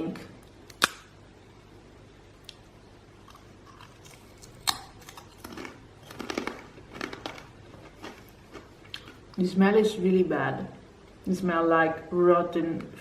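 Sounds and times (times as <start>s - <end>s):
crunchy chewing: 3.2s - 9.4s.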